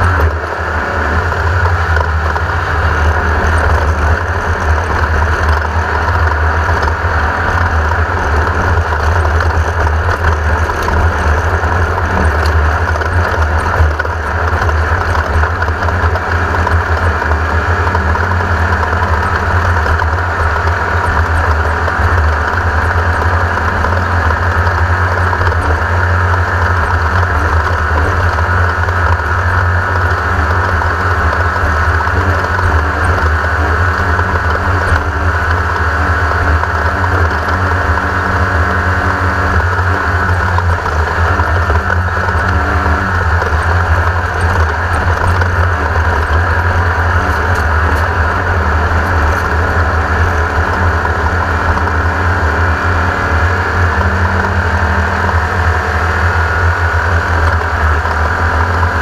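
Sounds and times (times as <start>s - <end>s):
race car engine running: 0.0s - 59.0s.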